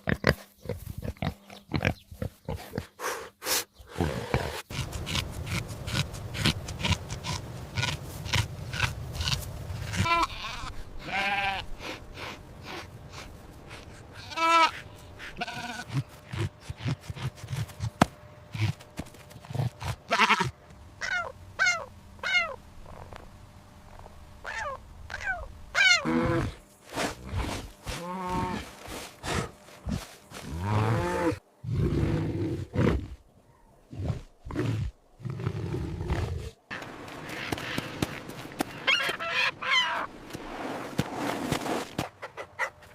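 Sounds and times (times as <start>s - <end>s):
sheep or goats bleating: 9.9s - 11.7s, 14.2s - 16.1s, 20.1s - 20.6s.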